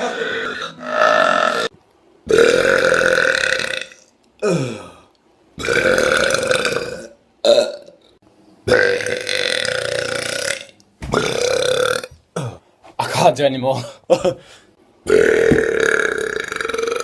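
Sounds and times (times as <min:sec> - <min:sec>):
men burping loudly: 0:02.3 - 0:05.0, 0:05.6 - 0:07.9, 0:08.7 - 0:12.6, 0:15.1 - 0:17.0.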